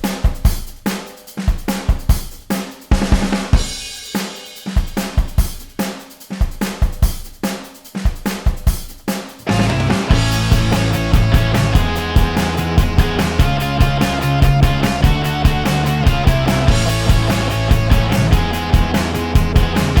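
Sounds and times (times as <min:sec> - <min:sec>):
rock drum beat: 0:00.0 - 0:20.0
band with held bass notes: 0:09.4 - 0:20.0.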